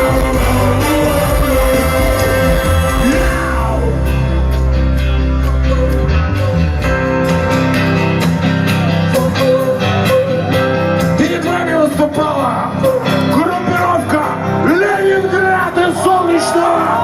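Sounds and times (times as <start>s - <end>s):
steady drum beat: 0.0s - 4.2s
deep bass: 0.0s - 14.7s
rock band playing: 0.0s - 17.0s.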